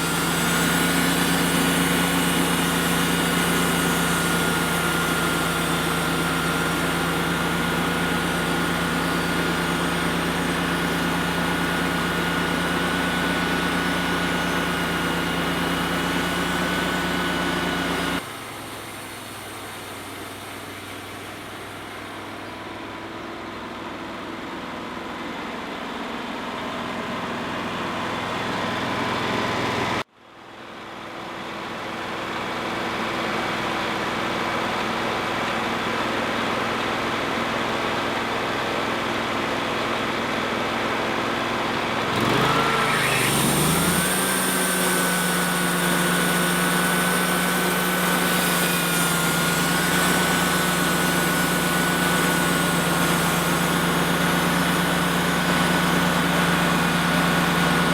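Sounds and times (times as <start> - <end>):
sawmill running: 0.0 - 30.1, 30.7 - 57.9.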